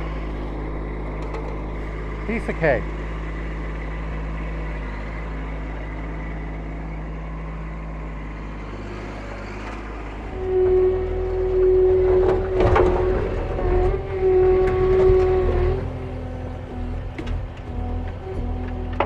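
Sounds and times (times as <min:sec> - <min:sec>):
strong steady whine: 0:00.0 - 0:08.3
diesel engine running: 0:00.0 - 0:19.0.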